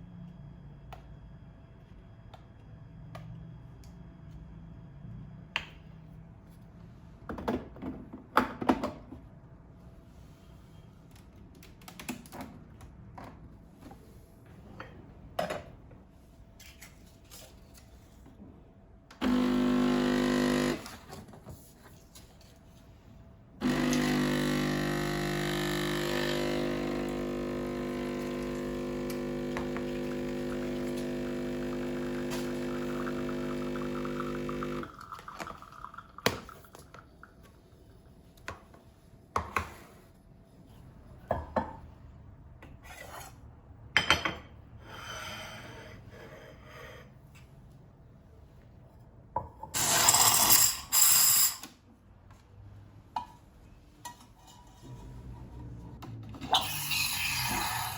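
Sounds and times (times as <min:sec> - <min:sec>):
electric appliance motor humming: 0:19.2 - 0:21.1, 0:23.6 - 0:35.0, 0:56.6 - 0:57.9.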